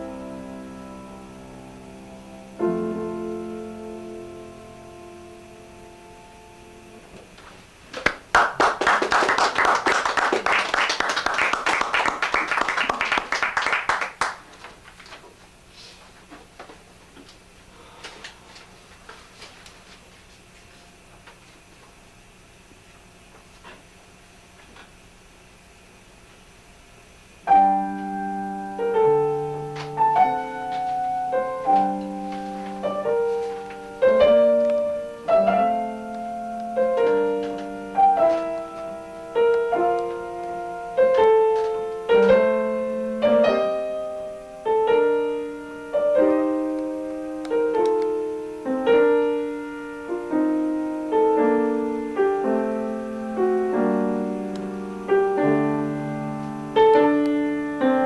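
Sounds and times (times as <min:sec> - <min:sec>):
slow piano chords: 0:00.0 - 0:07.4, 0:27.4 - 0:58.0.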